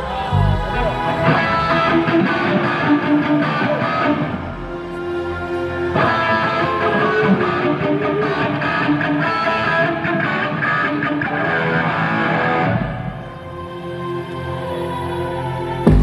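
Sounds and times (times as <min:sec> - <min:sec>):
electric guitar through amplifier: 0:00.0 - 0:13.5.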